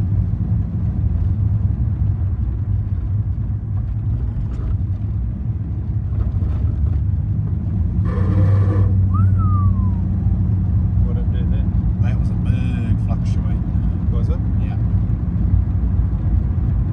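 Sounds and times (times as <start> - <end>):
car low drone: 0.0 - 16.9
short rising squeal: 8.1 - 10.0.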